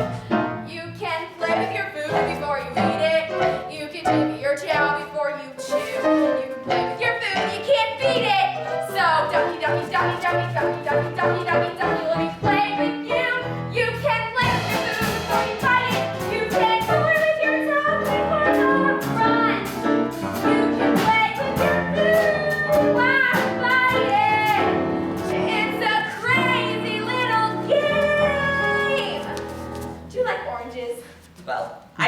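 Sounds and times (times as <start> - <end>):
instrumental backing with percussion: 14.4 - 25.8.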